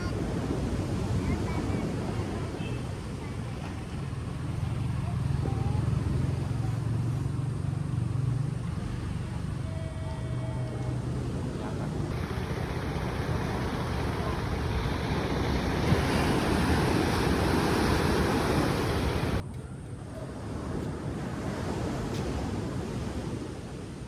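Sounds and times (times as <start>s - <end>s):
wind buffeting microphone: 0.0s - 7.4s, 10.7s - 19.4s
sea waves washing in: 0.0s - 19.4s, 20.3s - 24.0s.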